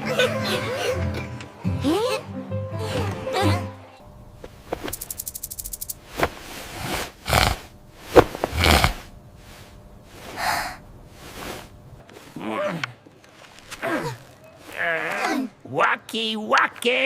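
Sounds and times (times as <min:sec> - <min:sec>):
cartoon kitten snoring: 0:06.6 - 0:11.7.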